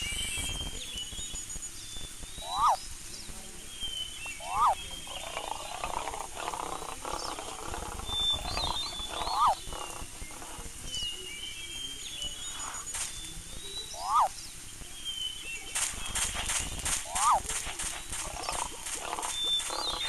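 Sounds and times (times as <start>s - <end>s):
high bird chirps: 0.0s - 20.0s
rough growl: 4.4s - 10.8s, 17.0s - 20.0s.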